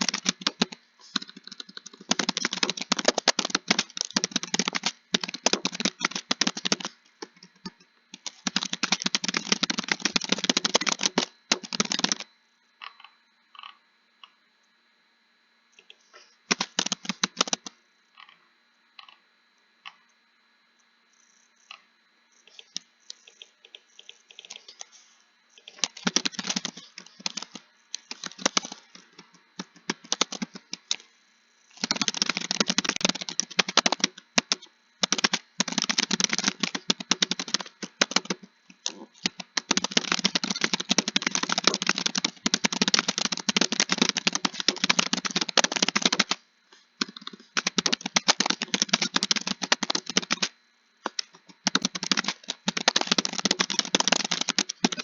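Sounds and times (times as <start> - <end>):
computer keyboard typing: 0.0 - 12.3, 16.5 - 17.7, 22.5 - 24.9, 25.6 - 31.0, 31.7 - 46.4, 47.0 - 55.0.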